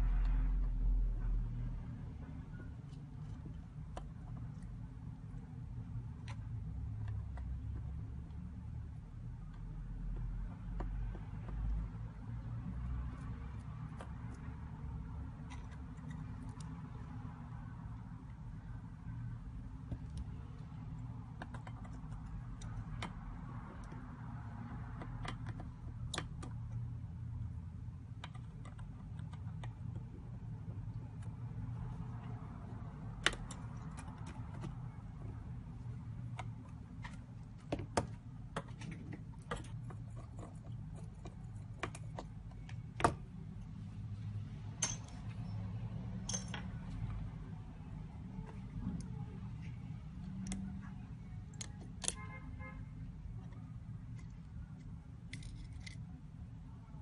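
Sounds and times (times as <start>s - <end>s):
small tools clicking and tapping: 32.2s - 43.2s, 44.8s - 45.6s, 46.2s - 47.3s
light clicks and taps: 48.4s - 52.3s.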